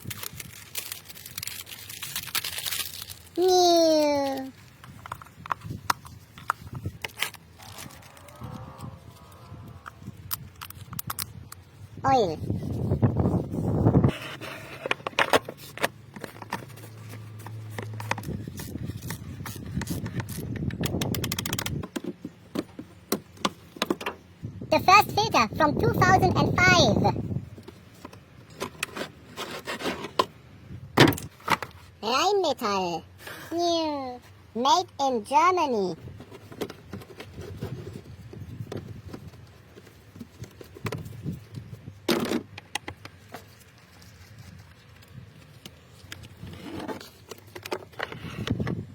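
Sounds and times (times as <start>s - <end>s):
tools and car parts clicking: 14.8s - 24.3s.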